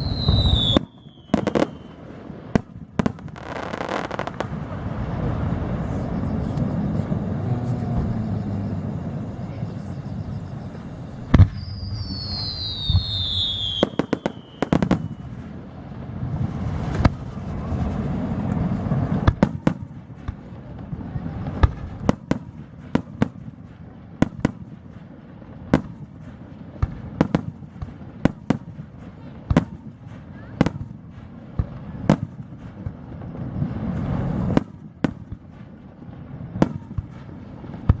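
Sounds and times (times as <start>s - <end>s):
falling firework whistle: 0.0s - 2.2s, 3.3s - 15.6s
firework cracks and pops: 0.0s - 38.0s
low rumble: 4.5s - 12.7s, 16.2s - 19.3s.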